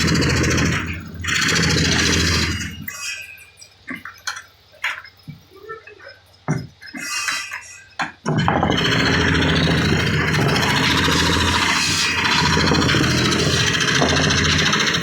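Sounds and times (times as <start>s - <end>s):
power tool motor: 0.0s - 2.9s, 8.5s - 15.0s
wood and tools clattering: 0.0s - 15.0s.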